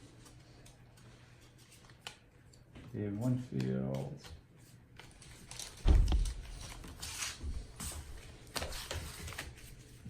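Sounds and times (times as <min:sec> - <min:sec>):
cards sliding and rustling: 0:06.4 - 0:10.0.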